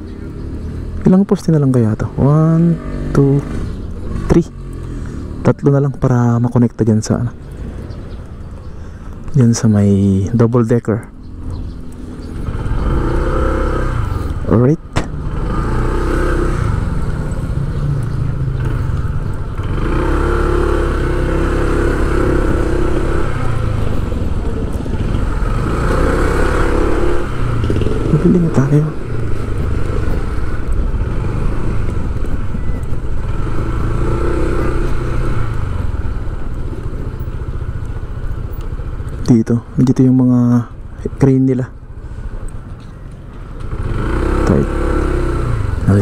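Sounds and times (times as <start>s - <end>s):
road noise: 0.0s - 46.0s
motorcycle engine running: 11.1s - 46.0s.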